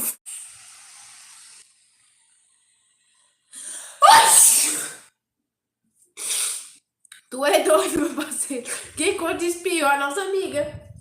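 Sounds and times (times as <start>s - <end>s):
sharp in-breath: 3.5s - 5.1s, 6.2s - 6.8s
loud sneeze: 3.9s - 5.1s, 6.2s - 6.8s.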